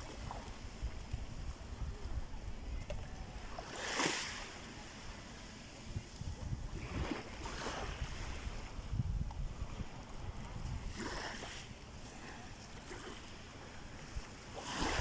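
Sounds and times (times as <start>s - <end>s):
wind rumble on microphone: 0.0s - 15.0s
sea waves washing in: 3.3s - 6.0s, 6.6s - 15.0s.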